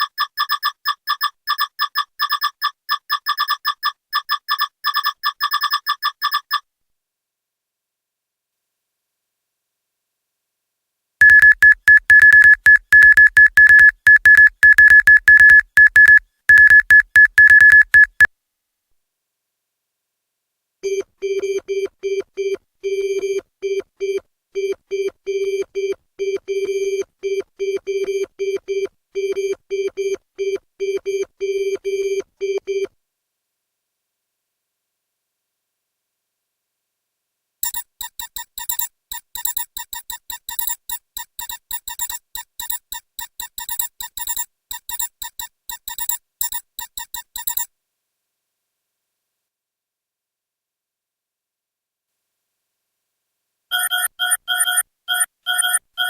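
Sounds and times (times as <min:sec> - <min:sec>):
high-pitched electronic beeps: 0:11.2 - 0:18.3.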